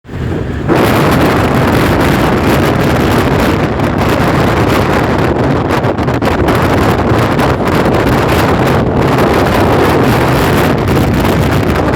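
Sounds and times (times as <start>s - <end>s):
moving vehicle running noise: 0.0s - 11.9s
wind buffeting microphone: 0.0s - 11.9s.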